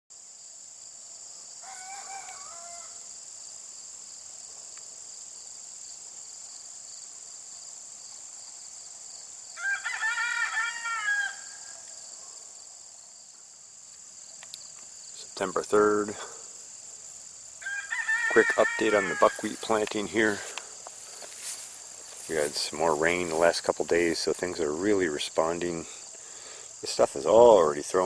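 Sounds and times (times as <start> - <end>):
rooster crowing: 1.6 - 3.2, 9.5 - 11.9, 17.6 - 20.4.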